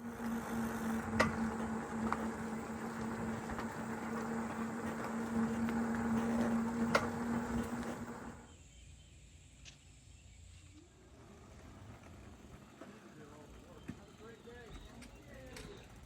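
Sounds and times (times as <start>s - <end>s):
electric motor hum: 0.0s - 8.5s.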